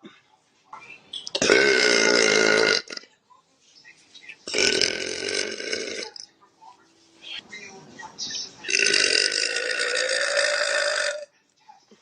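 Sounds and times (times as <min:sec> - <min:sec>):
woman burping: 0:01.4 - 0:03.1, 0:04.5 - 0:06.3, 0:08.7 - 0:11.3.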